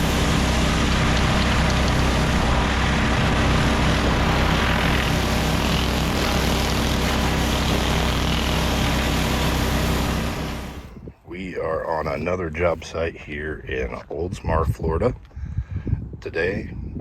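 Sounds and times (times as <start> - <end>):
engine running steadily: 0.0 - 11.1.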